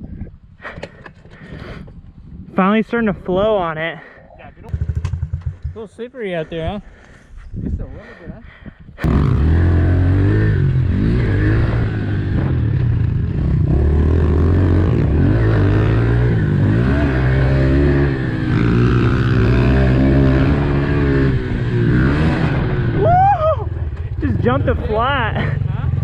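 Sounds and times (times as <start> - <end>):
dirt bike engine revving: 4.7 - 5.8, 9.0 - 26.0.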